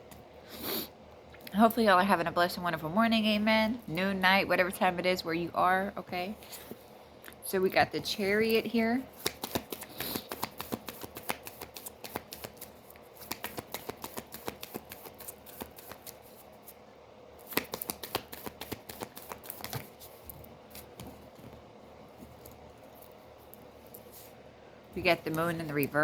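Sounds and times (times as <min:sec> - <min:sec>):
cards being shuffled: 0:09.1 - 0:16.8, 0:17.4 - 0:21.6.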